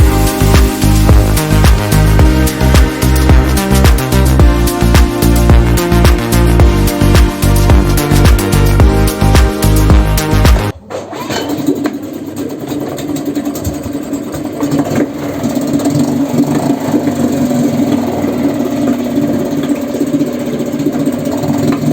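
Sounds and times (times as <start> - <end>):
music: 0.0 - 10.7
outboard motor idling: 0.0 - 10.8, 11.5 - 21.9.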